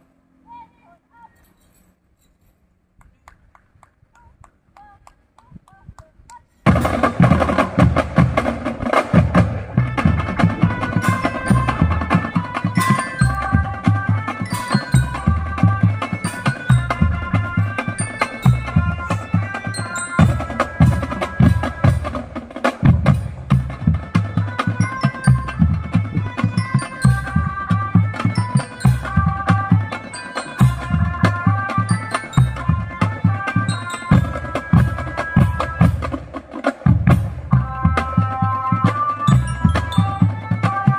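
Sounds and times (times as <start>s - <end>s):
bass and snare drums: 6.6s - 40.9s
mallet instrument melody: 10.4s - 36.2s, 36.9s - 40.9s.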